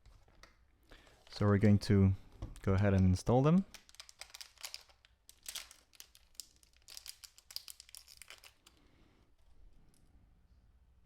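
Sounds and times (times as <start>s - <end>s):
plastic parts crinkling and clicking: 2.4s - 8.8s.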